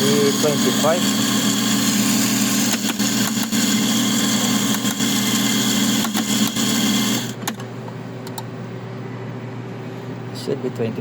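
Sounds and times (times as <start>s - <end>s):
coffee grinder motor grinding: 0.0s - 7.4s.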